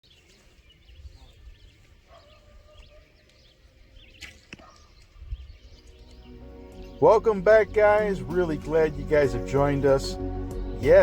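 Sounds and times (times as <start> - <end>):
birds chirping faintly: 0.0 - 11.0.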